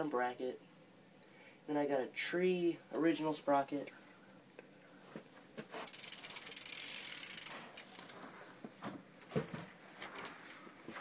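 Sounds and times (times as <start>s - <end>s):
bike hub ratcheting: 5.8s - 8.1s.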